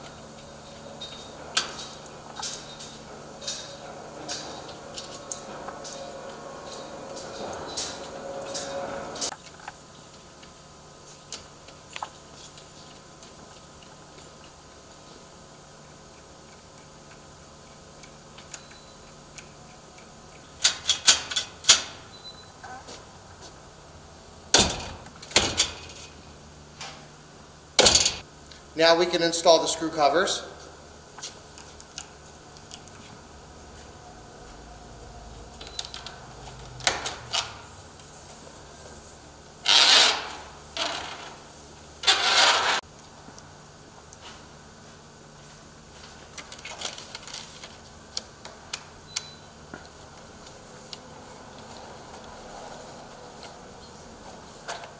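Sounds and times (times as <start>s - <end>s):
short scraping bursts: 42.0s - 42.8s.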